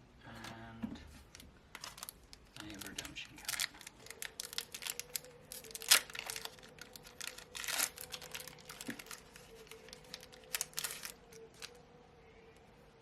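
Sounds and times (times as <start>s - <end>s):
cards clicking and rustling: 1.3s - 11.7s
foil pack crinkling: 1.3s - 11.8s.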